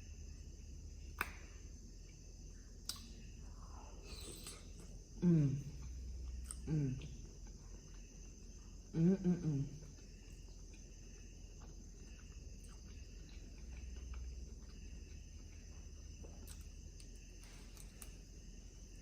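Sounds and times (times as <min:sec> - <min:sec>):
high-pitched background whine: 0:00.0 - 0:19.0.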